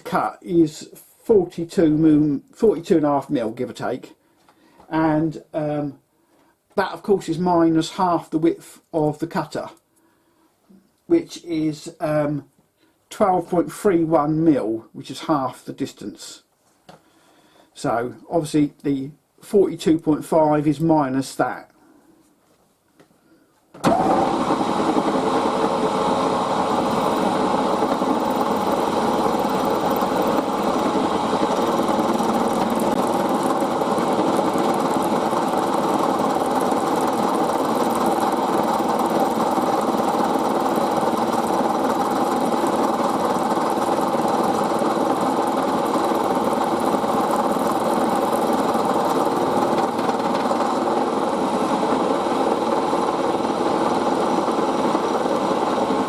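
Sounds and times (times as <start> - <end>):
milling machine cutting brass: 26.7 - 51.2.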